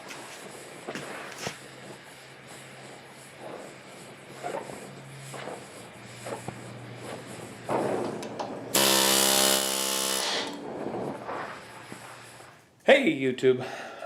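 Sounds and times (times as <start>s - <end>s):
electric power tool running: 8.7s - 10.6s.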